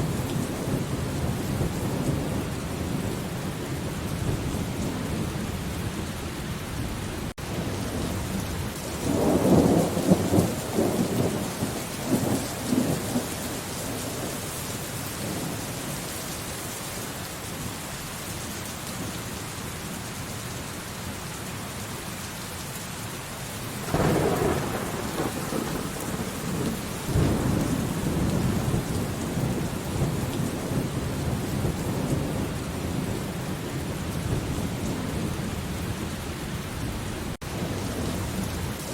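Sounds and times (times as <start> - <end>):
steady rain: 0.0 - 38.9
thunder rumbling: 6.8 - 14.4, 23.8 - 38.9.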